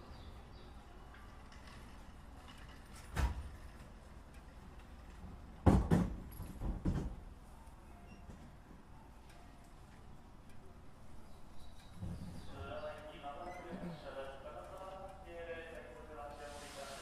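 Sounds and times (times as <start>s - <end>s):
low steady background noise: 0.0s - 17.0s
sharp knocks inside train car: 3.1s - 3.6s, 5.3s - 7.2s.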